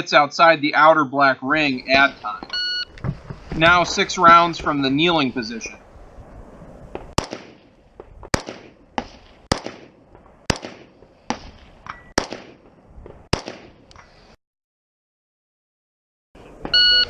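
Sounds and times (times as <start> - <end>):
rifle shots with ringing tail: 7.1 - 13.9.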